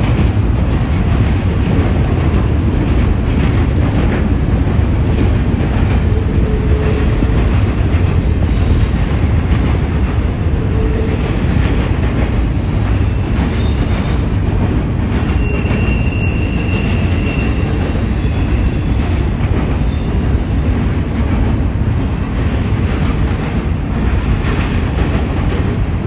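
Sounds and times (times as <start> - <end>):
steel wheels rumbling on rail: 0.0 - 26.0.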